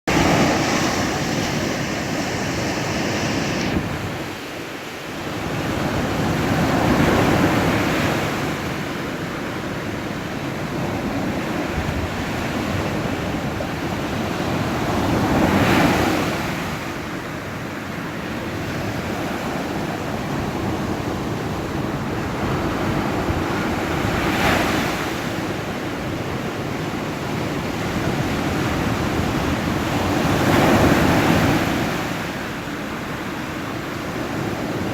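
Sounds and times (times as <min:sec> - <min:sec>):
ocean waves breaking: 0:00.0 - 0:19.6.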